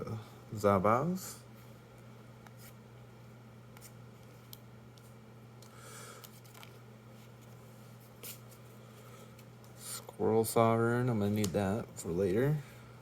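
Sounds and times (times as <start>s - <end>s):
low steady hum: 0.0s - 13.0s
trading cards clicking and rustling: 3.8s - 6.8s.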